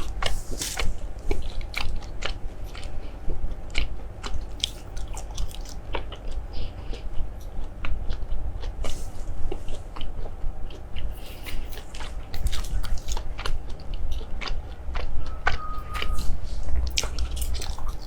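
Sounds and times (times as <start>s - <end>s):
person chewing crunchy food: 0.0s - 18.0s.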